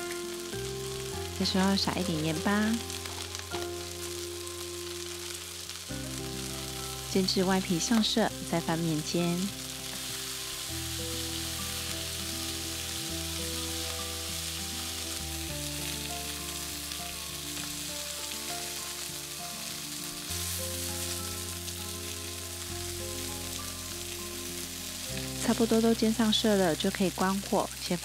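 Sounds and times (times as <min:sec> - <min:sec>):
background music of held notes: 0:00.0 - 0:27.2
chicken sizzling in a pan: 0:00.0 - 0:28.0.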